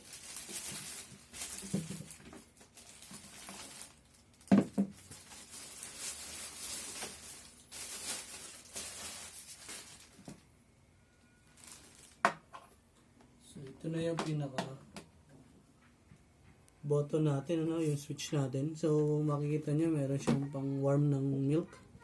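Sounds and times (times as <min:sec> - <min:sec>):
plastic packaging rustling: 0:00.0 - 0:10.5, 0:11.2 - 0:12.5.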